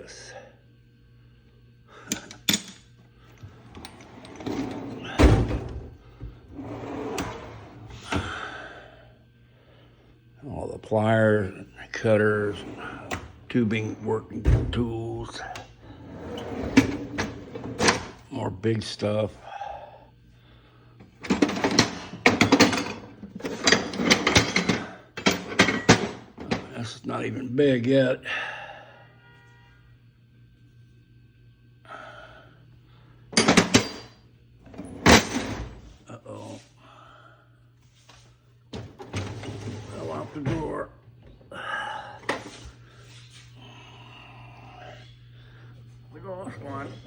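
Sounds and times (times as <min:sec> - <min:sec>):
metal drawers sliding: 0:03.6 - 0:05.9, 0:06.5 - 0:08.2, 0:16.0 - 0:18.2, 0:21.2 - 0:26.7, 0:33.4 - 0:34.1, 0:34.7 - 0:35.9, 0:38.8 - 0:40.9
hand tools rattling in drawer: 0:21.2 - 0:26.6.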